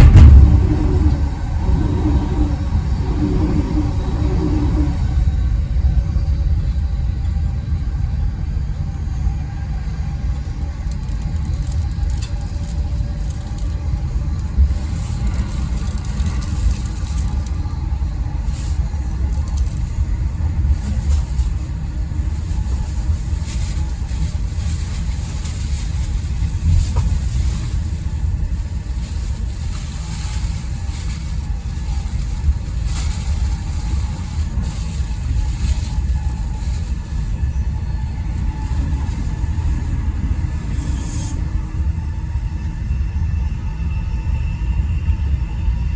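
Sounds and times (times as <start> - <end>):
train running low rumble: 0.0 - 45.9
running gear clicks and knocks: 10.8 - 14.5.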